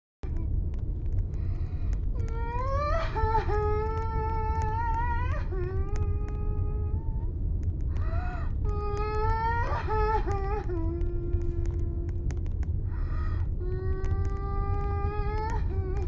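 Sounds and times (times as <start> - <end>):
low rumble: 0.2 - 16.0
wailing cry: 2.2 - 7.1, 8.0 - 12.2, 13.6 - 16.0.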